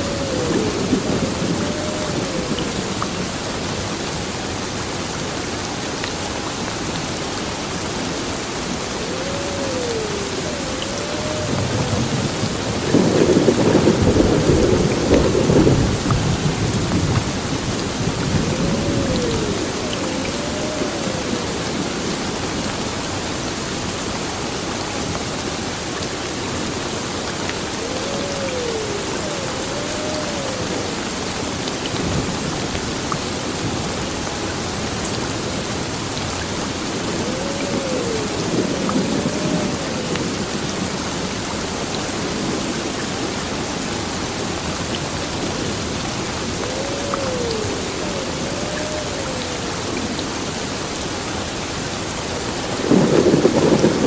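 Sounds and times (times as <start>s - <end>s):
low thunder rumbling: 0.0s - 3.4s, 9.0s - 22.4s, 37.0s - 40.9s, 45.4s - 50.2s, 52.7s - 54.0s
heavy rain pouring: 0.0s - 54.0s.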